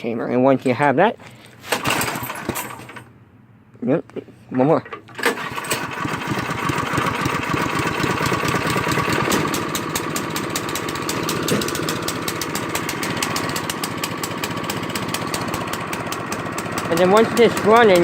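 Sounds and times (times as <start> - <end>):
snowblower engine running: 5.2 - 18.0.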